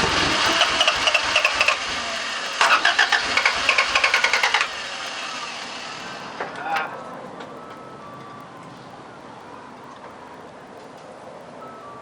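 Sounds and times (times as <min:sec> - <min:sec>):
engine cranked by starter: 0:00.0 - 0:06.8.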